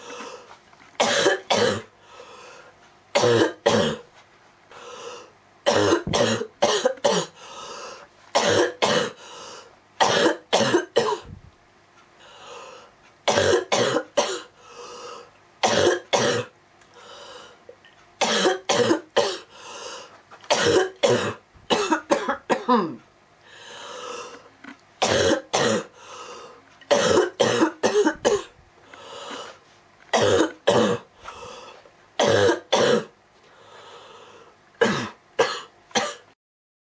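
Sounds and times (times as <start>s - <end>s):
girl coughing roughly: 1.0s - 1.9s, 3.2s - 4.0s, 5.7s - 7.4s, 8.4s - 9.2s, 10.0s - 11.4s, 13.3s - 14.5s, 15.6s - 16.5s, 18.2s - 19.5s, 20.5s - 23.0s, 25.0s - 26.0s, 26.9s - 28.6s, 30.1s - 31.1s, 32.2s - 33.1s, 34.8s - 36.3s.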